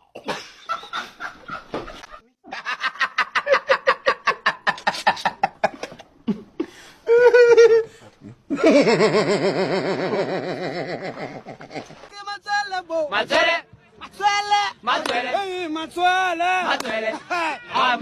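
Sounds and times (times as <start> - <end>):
person laughing: 0.3 - 12.1, 17.1 - 17.7
wavering laugh-like wail: 0.7 - 12.1, 17.1 - 18.0.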